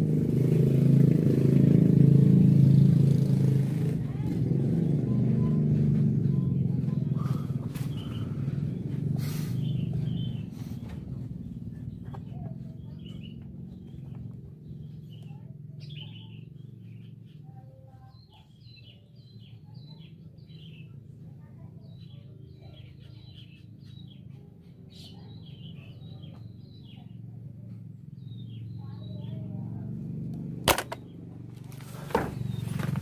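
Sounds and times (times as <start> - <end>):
steady low hum: 0.0 - 17.3
small birds chirping: 3.9 - 33.0.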